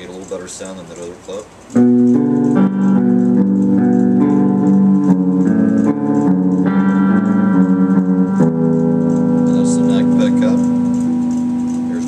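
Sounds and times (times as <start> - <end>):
clean electric guitar playing: 1.7 - 12.0.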